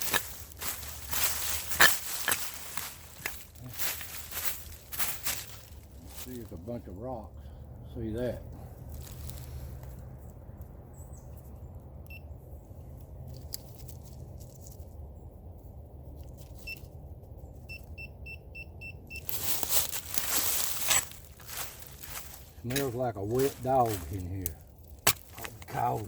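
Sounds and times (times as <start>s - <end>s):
scraping and rustling: 0.0s - 6.8s, 19.2s - 26.0s
metal detector beeps: 17.7s - 19.4s.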